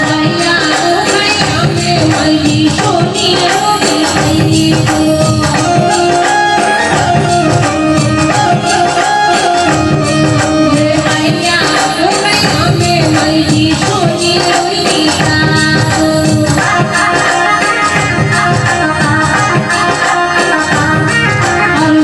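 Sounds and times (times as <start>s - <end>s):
hand percussion: 0.0s - 22.0s.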